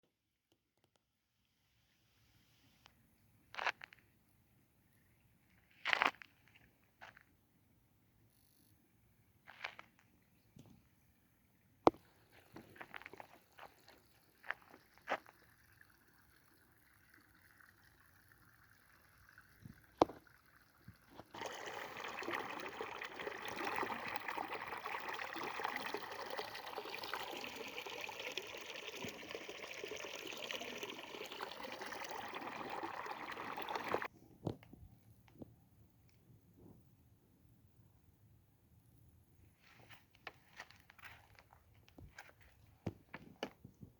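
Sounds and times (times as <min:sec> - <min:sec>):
water running in a stream: 0:09.5 - 0:34.1.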